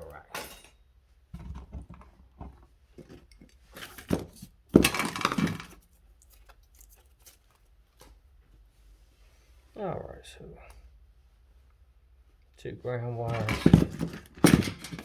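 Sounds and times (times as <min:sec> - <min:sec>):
hand tools and wire clinking: 0:00.0 - 0:00.8, 0:01.4 - 0:07.6, 0:13.2 - 0:15.0.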